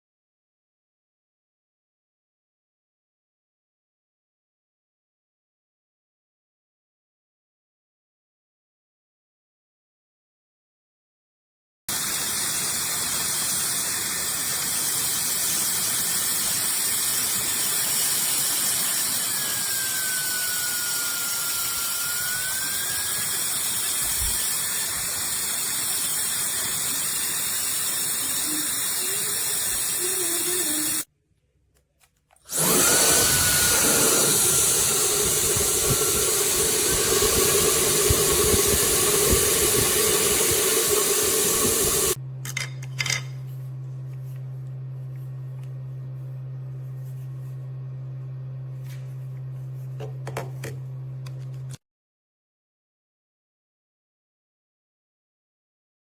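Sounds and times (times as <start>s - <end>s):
hair dryer running: 11.9s - 31.1s, 32.5s - 42.2s.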